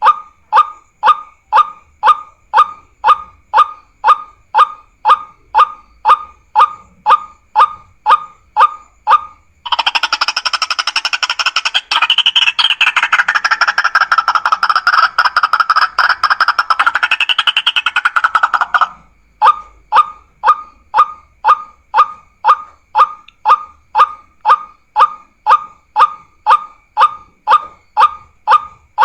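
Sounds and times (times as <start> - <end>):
bird calls and chattering: 8.1 - 20.1.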